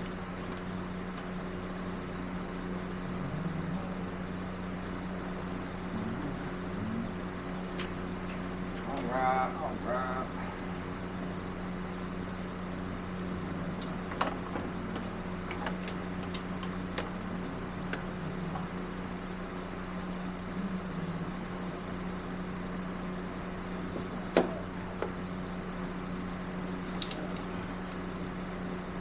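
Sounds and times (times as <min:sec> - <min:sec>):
electric fan humming: 0:00.0 - 0:29.0
clicks and knocks of tools: 0:26.9 - 0:28.0.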